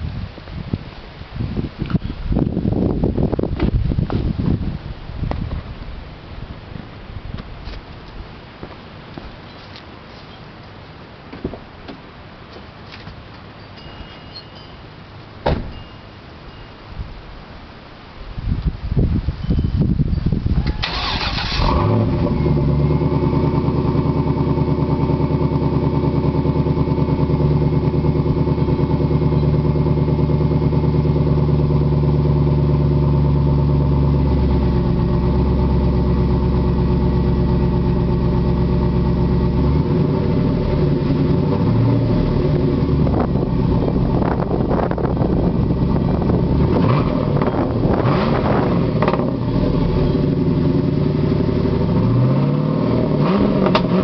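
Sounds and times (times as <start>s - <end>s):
car engine starting and idling: 20.6s - 54.0s.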